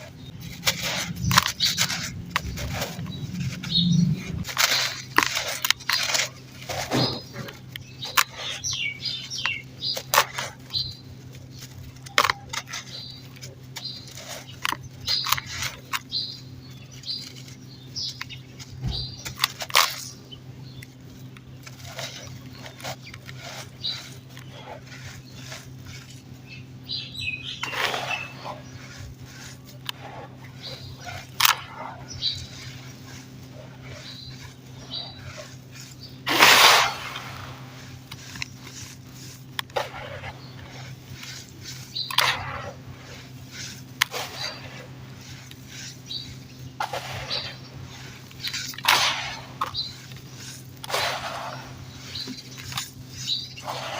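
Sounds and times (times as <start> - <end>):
dry dirt crumbling: 0.0 - 53.9
low hum: 0.0 - 53.9.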